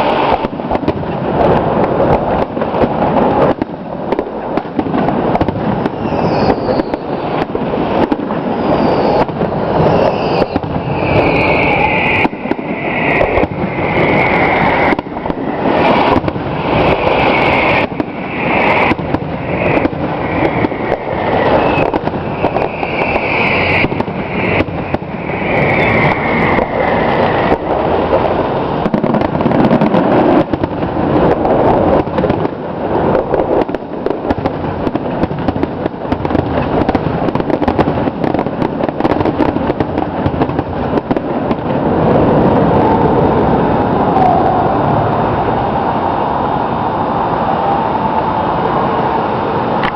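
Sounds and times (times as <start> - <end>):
fireworks bangs and crackles: 0.0 - 49.9
fireworks whistles falling in pitch: 5.7 - 28.2.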